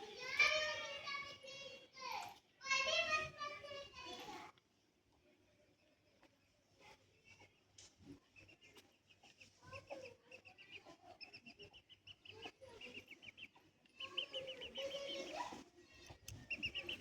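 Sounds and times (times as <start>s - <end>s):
chickens clucking: 8.0s - 17.0s.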